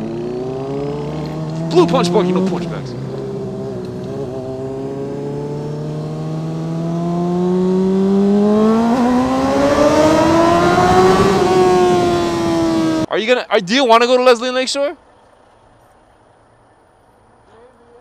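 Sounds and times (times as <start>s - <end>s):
motorcycle engine revving: 0.0s - 13.1s.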